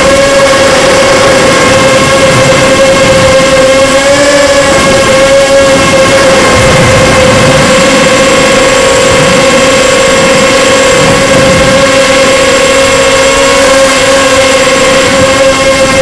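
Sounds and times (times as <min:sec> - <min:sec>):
drone motors whining: 0:00.0 - 0:16.0.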